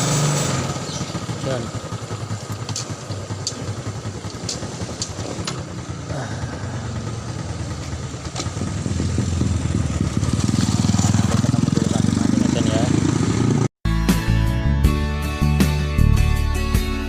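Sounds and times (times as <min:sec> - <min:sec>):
motorcycle engine running: 0:00.0 - 0:13.7.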